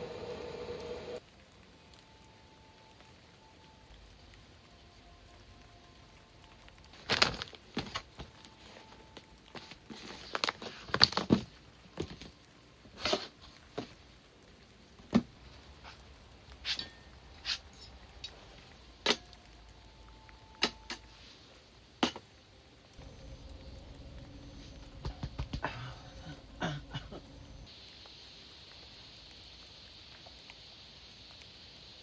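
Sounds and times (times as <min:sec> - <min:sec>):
low steady hum: 0:00.0 - 0:07.2, 0:12.4 - 0:30.1.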